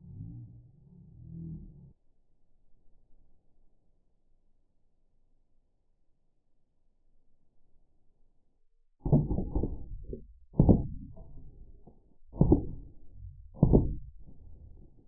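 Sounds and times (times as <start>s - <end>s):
slowed-down gunshot thumps: 9.0s - 15.0s.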